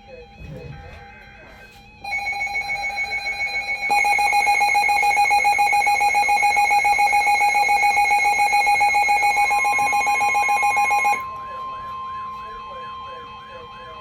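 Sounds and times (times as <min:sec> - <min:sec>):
higher alarm tone: 0:02.1 - 0:11.2
weather radio alarm tone: 0:02.1 - 0:11.2.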